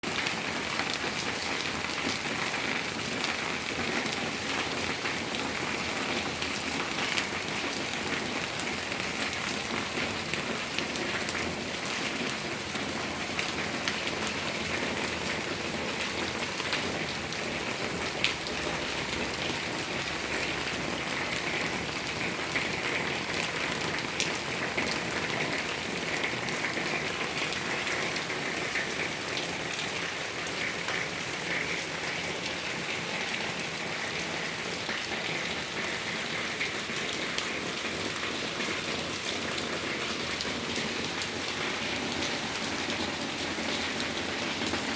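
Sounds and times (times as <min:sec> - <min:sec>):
raindrops ticking: 0:00.0 - 0:44.9
steady rain hiss: 0:24.2 - 0:44.9.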